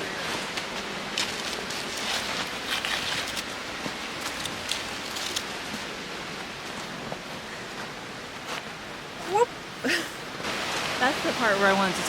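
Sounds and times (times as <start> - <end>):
waterfall rushing: 0.0 - 12.0
crisp crackles: 1.1 - 5.5.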